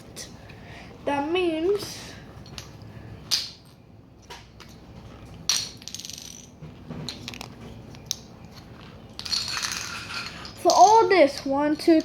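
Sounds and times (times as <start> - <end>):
plastic game pieces clattering: 8.8 - 12.0.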